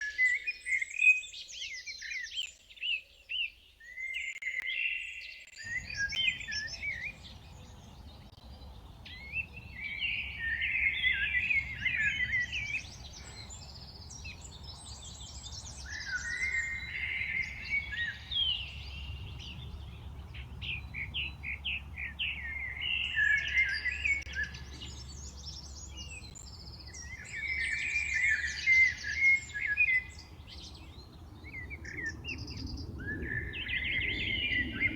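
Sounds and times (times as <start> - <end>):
songbirds chirping: 0.0 - 34.9
low background rumble: 16.5 - 23.4.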